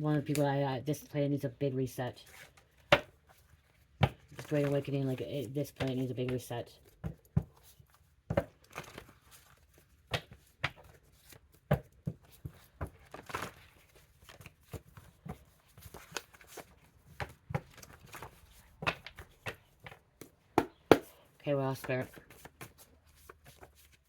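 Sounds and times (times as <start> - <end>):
cards rustling: 2.2 - 24.0
cards tapping and flicking: 10.0 - 13.6, 14.3 - 21.2.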